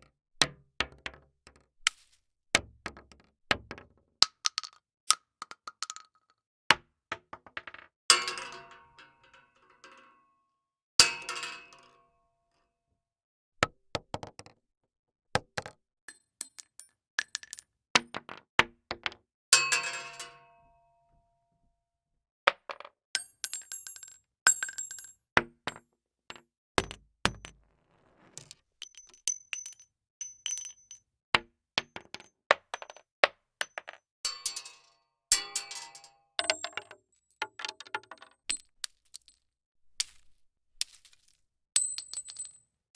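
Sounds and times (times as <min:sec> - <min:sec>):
metal clanks and clinks: 0:33.6 - 0:39.3.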